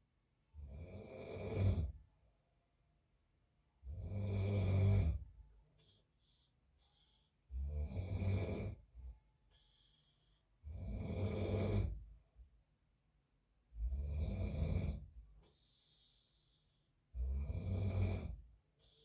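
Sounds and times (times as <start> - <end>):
quiet breaths: 0.0 - 2.1, 3.8 - 12.6, 13.4 - 19.0
man snoring: 0.7 - 2.0, 3.9 - 5.2, 7.6 - 8.8, 10.6 - 12.0, 13.8 - 15.1, 17.2 - 19.0.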